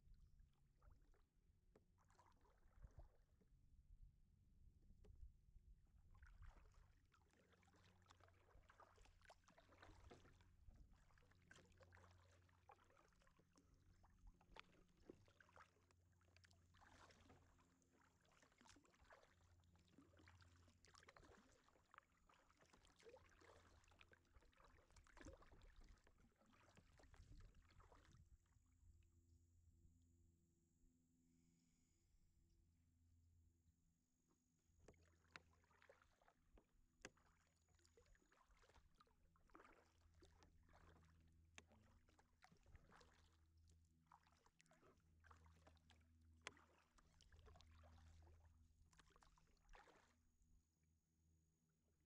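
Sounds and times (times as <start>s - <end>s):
paddle splashing in water: 0.8s - 3.3s, 6.0s - 28.4s, 34.8s - 50.4s.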